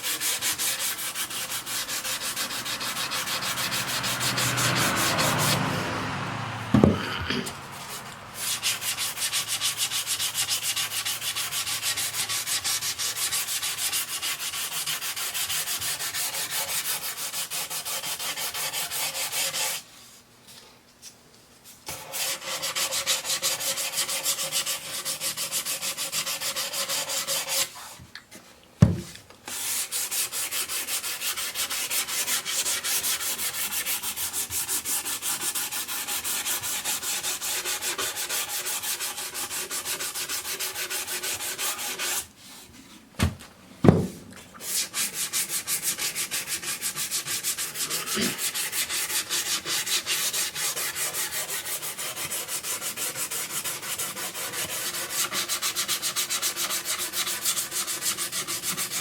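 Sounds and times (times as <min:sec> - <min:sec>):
sandpaper sanding wood: 0:00.0 - 0:06.0, 0:06.7 - 0:19.9, 0:21.9 - 0:28.0, 0:29.5 - 0:42.6, 0:44.6 - 0:59.0
sharp knock: 0:43.2 - 0:44.2.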